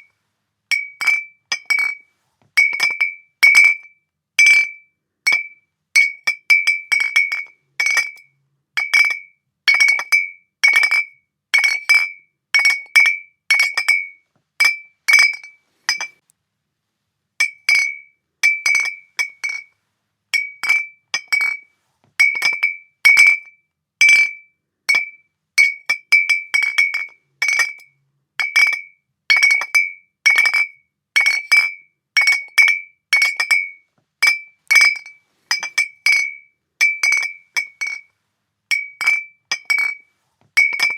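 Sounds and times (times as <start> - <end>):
glass bottles clinking: 0.7 - 2.0, 2.6 - 3.8, 5.3 - 8.2, 12.6 - 16.2, 17.4 - 19.7, 20.4 - 21.6, 22.2 - 23.4, 25.0 - 27.8, 29.4 - 38.1, 38.7 - 40.0, 40.6 - 40.9.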